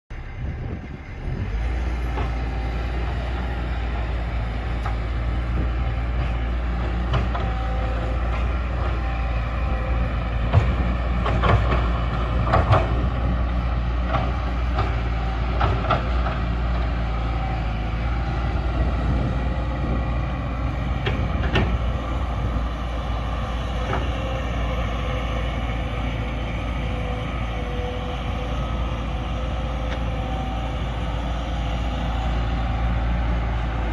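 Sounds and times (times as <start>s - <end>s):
excavator diesel engine running: 0.1s - 33.9s.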